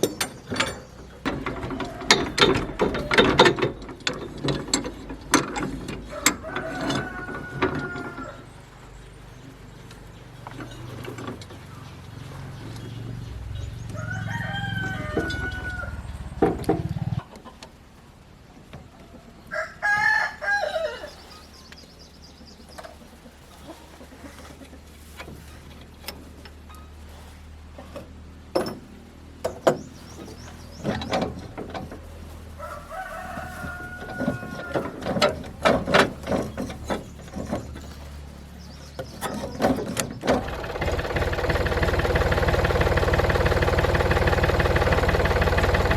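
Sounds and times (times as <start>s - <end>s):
low engine hum: 0.0s - 18.7s, 21.1s - 45.9s
rooster crowing: 1.3s - 3.2s, 6.1s - 8.5s, 13.8s - 16.2s, 19.5s - 21.2s, 32.6s - 35.3s.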